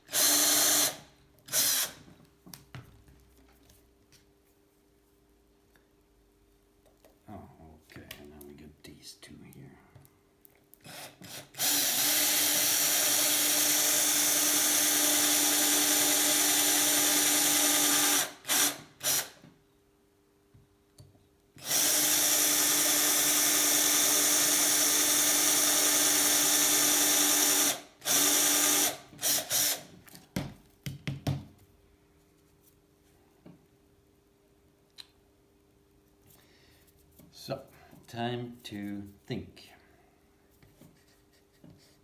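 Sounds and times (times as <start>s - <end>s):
electric drill boring holes: 0.1s - 2.0s, 10.9s - 19.4s, 21.6s - 29.9s.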